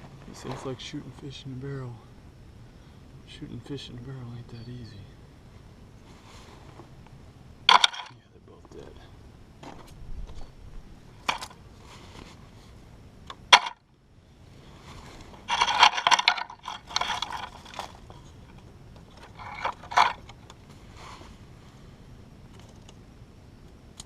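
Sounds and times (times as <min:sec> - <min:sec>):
scraping and rustling handling noises: 0:06.0 - 0:07.1, 0:11.2 - 0:12.8, 0:14.6 - 0:21.8.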